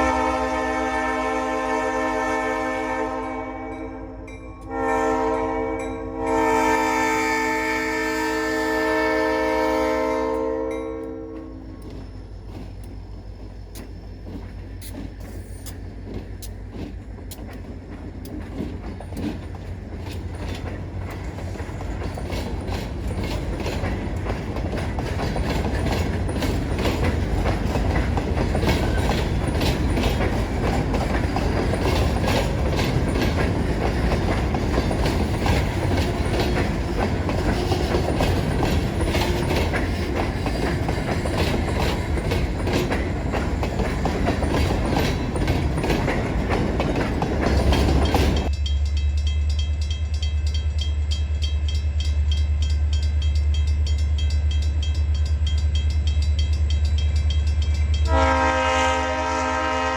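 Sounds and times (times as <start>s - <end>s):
freight train rumbling past: 0.0s - 59.9s
wheels clicking over rail joints: 11.0s - 54.6s.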